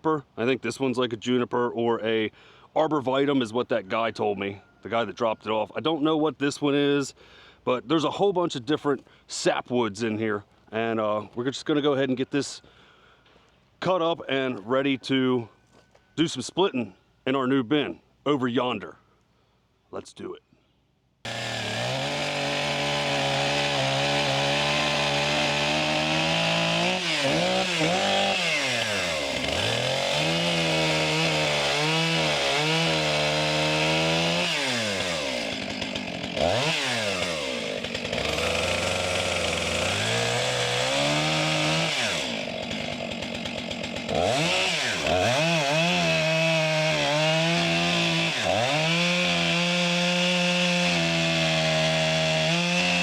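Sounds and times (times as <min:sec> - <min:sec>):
chainsaw cutting wood: 0:21.3 - 0:53.0.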